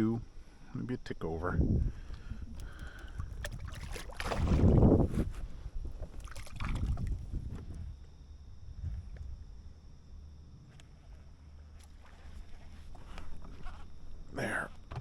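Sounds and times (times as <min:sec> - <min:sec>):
wind buffeting microphone: 0:01.5 - 0:09.6.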